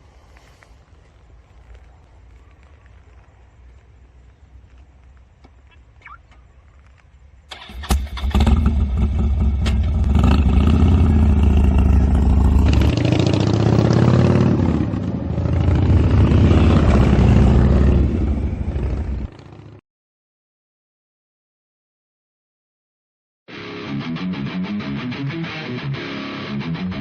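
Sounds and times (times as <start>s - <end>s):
motorcycle engine revving: 7.5s - 19.8s.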